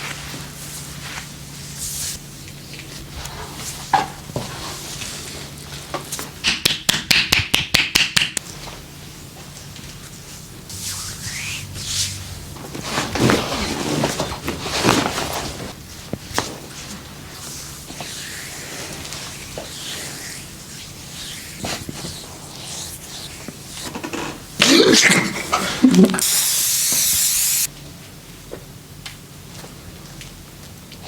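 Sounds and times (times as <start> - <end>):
hands rubbing skin: 14.8 - 24.4.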